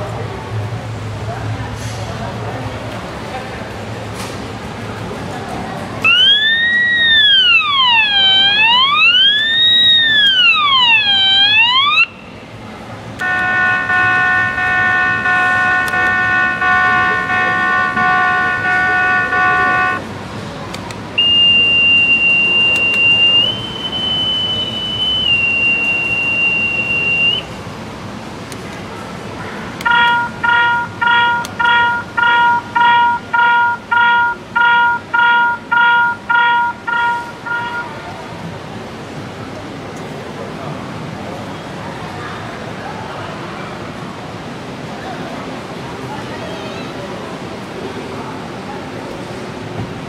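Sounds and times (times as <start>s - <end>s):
pulsing alarm tone: 6.1s - 12.2s, 13.2s - 20.0s, 21.2s - 27.5s, 29.8s - 37.9s
high alarm tone stepping in pitch: 13.2s - 20.0s, 21.2s - 27.5s, 29.8s - 37.9s
multi-tone alarm horn: 13.2s - 20.0s, 21.2s - 27.5s, 29.8s - 38.0s.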